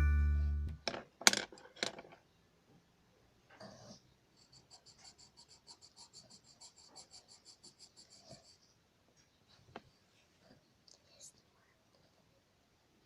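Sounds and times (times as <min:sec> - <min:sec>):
pencil scratching on paper: 0:04.4 - 0:08.8.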